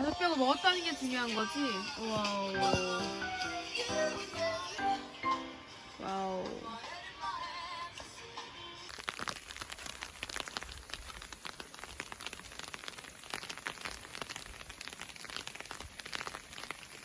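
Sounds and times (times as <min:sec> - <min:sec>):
sleet pattering on a tent: 0:08.9 - 0:17.0.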